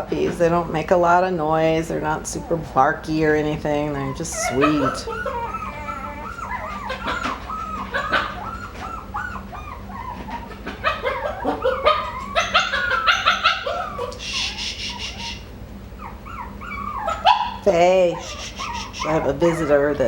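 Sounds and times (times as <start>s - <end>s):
dog whining and yipping: 4.0s - 20.0s.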